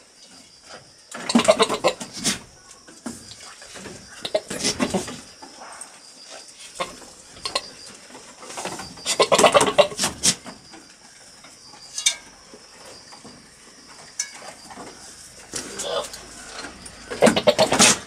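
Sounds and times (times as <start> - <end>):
goat making rough vocal noises: 15.6 - 16.2
goat pitched call: 15.7 - 16.2, 17.1 - 18.0.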